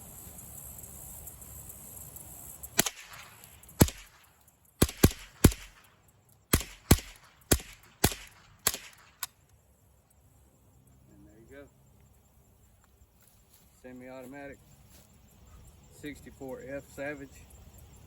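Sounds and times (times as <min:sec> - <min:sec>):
rifle shots cracking: 0:02.8 - 0:09.4.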